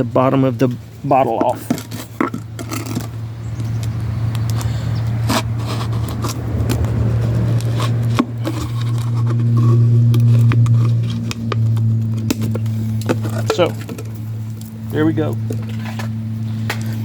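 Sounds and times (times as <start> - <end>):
low engine-like hum: 0.0 - 17.0
blade cutting plastic bottle: 4.5 - 14.1.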